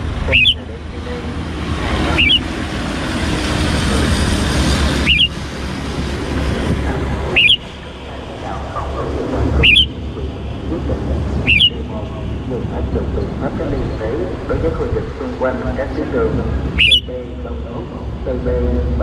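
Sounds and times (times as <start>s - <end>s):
road traffic noise: 0.0s - 19.0s
bird sharp call: 0.3s - 0.6s, 2.1s - 2.5s, 5.0s - 5.4s, 7.3s - 7.7s, 9.6s - 10.0s, 11.4s - 11.9s, 16.8s - 17.2s.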